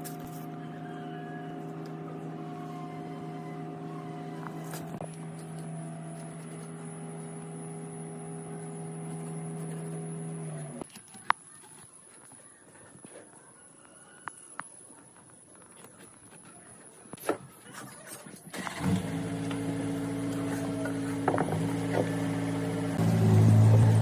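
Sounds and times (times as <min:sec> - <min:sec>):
machine motor humming: 0:00.0 - 0:10.8, 0:18.6 - 0:24.0.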